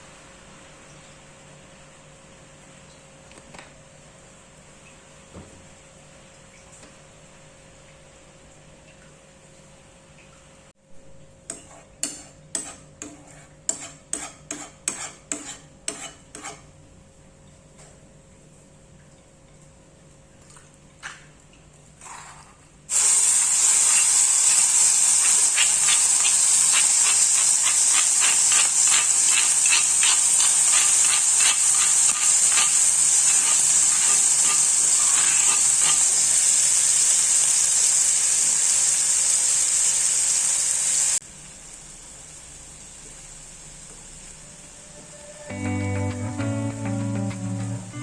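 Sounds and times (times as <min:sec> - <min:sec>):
sauce sizzling in hot oil: 0:22.9 - 0:44.8.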